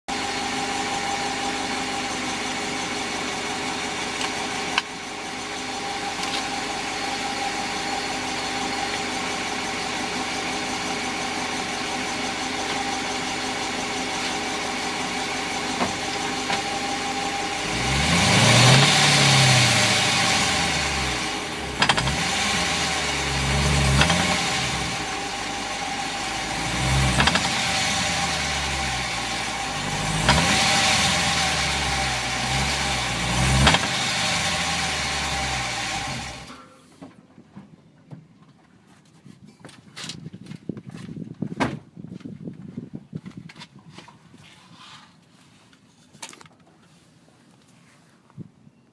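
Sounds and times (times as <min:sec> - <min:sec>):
car engine idling and revving: 0:00.1 - 0:36.6.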